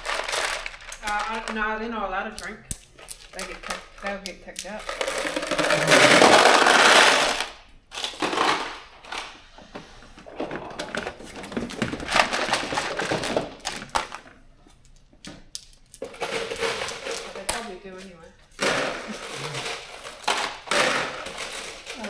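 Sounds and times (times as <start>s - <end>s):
metal bolts clattering and clinking: 0.0s - 1.7s, 2.3s - 5.5s, 11.2s - 21.7s.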